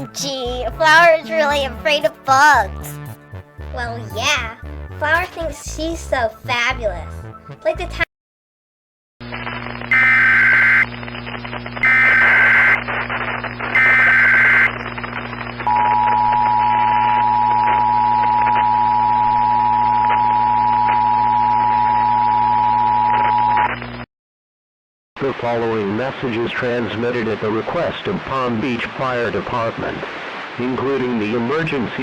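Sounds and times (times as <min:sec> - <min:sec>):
static hiss and hum: 0:09.2 - 0:24.0, 0:25.2 - 0:32.0.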